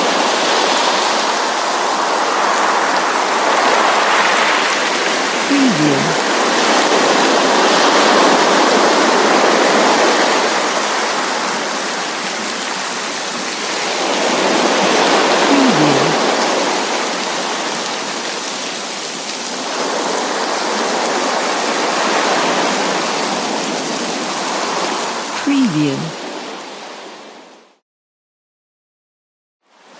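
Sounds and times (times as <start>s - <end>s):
rain falling: 6.1s - 15.5s, 16.1s - 25.4s.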